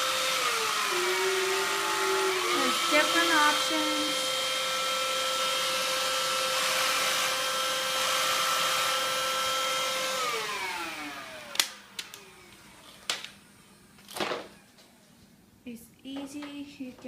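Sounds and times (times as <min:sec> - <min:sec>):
stick vacuum whine: 0:00.0 - 0:13.4.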